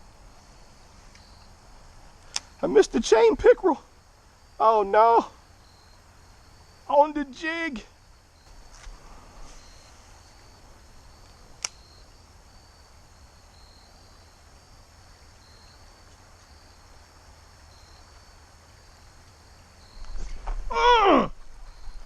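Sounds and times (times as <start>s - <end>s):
insects chirping: 0.0s - 22.0s
sharp click: 11.6s - 11.8s.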